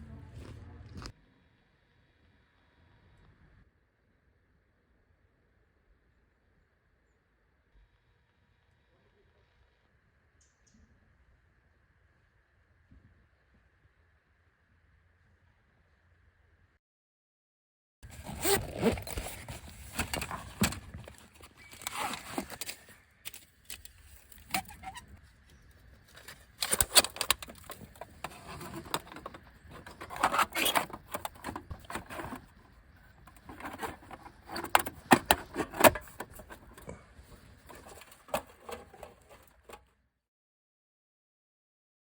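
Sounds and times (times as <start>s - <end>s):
camping gear rustling: 18.0s - 39.8s.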